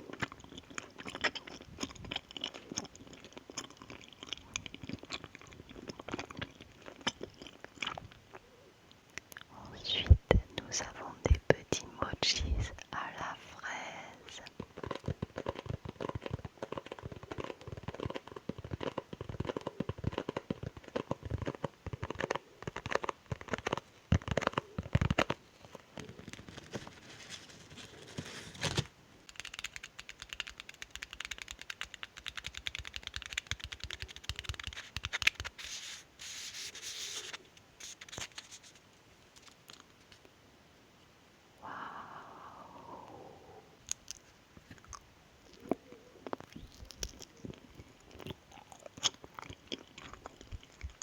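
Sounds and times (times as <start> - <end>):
packaging crinkling: 14.5 - 40.2
packaging ripping: 26.0 - 28.9, 29.6 - 38.8.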